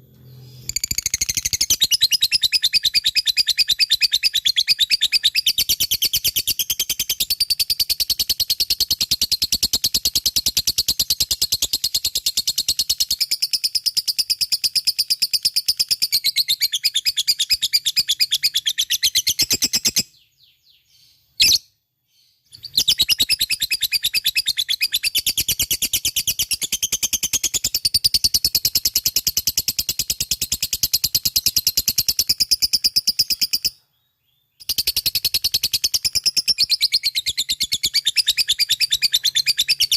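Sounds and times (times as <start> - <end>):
lovebird chattering chirps: 0.4 - 9.1.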